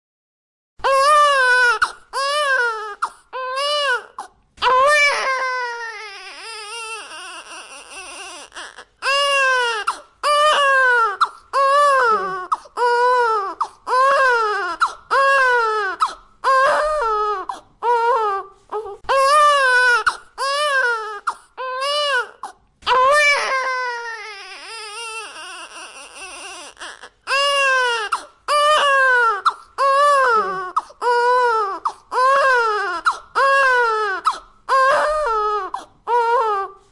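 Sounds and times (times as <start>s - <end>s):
infant crying: 0.8s - 36.9s.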